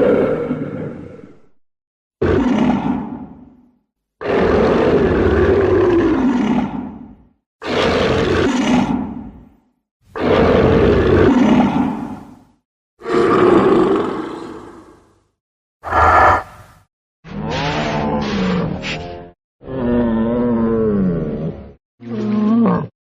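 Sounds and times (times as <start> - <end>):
monster roars: 0.0 - 1.5, 2.2 - 9.4, 10.2 - 12.4, 13.0 - 18.9.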